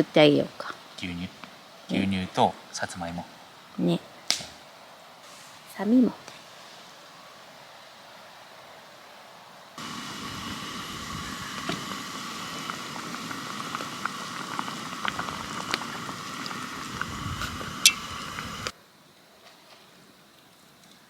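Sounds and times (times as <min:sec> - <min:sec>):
food bubbling and sizzling: 0:09.8 - 0:18.7.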